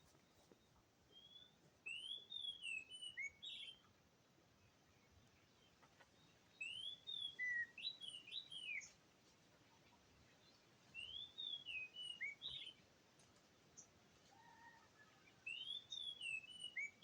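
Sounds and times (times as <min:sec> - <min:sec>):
bird singing whistled notes: 0:01.2 - 0:03.8, 0:06.6 - 0:08.9, 0:11.0 - 0:12.8, 0:15.5 - 0:17.0.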